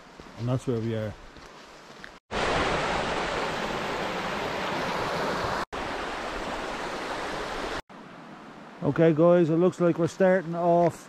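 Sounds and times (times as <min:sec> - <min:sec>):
river water rushing: 0:02.3 - 0:08.8.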